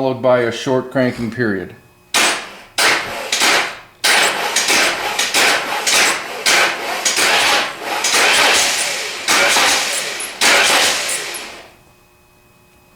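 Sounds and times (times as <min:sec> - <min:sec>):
starter motor cranking engine: 0:02.1 - 0:11.8.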